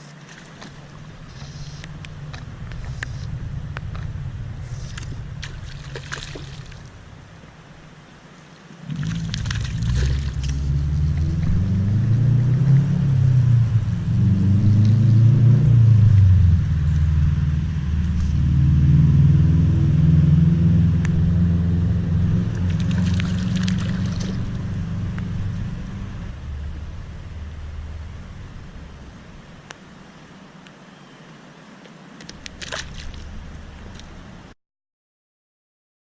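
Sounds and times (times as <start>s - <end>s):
vehicle engine revving: 0.9s - 7.4s, 8.9s - 30.0s.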